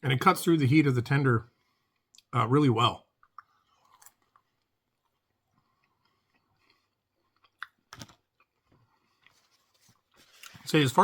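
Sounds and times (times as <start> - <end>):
chewing crunchy food: 3.1 - 10.6.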